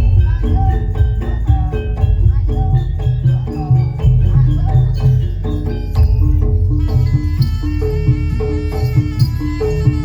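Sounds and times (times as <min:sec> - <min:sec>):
gamelan music: 0:00.0 - 0:10.0.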